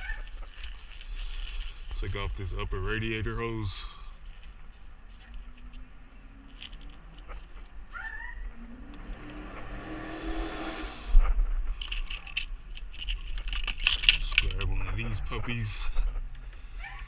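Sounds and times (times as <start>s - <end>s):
animal calling: 0.0s - 0.5s, 7.0s - 11.3s, 16.6s - 17.0s.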